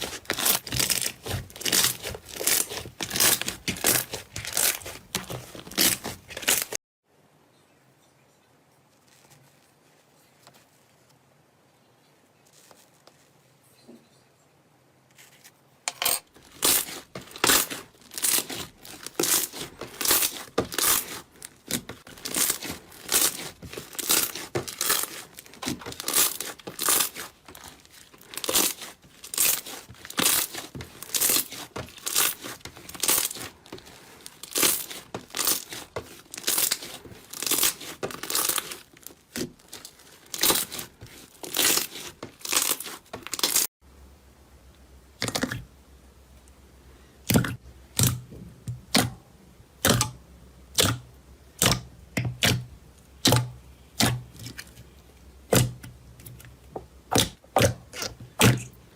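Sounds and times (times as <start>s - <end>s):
slime crackling by hand: 0.0s - 6.8s, 16.3s - 43.7s.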